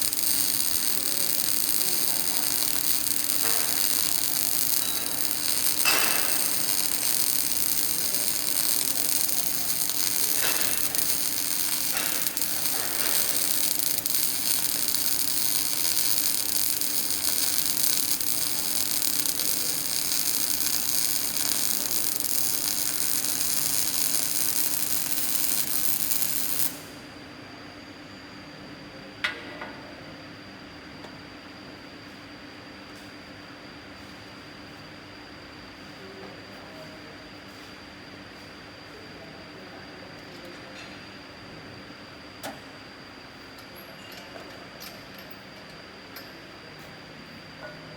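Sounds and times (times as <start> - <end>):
arc welding crackling hiss: 0.0 - 27.1.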